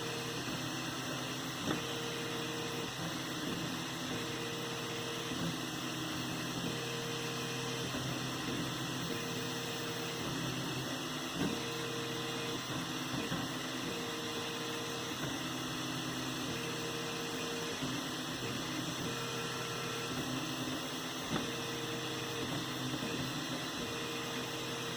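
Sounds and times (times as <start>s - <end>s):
printer fan hum: 0.0s - 24.9s.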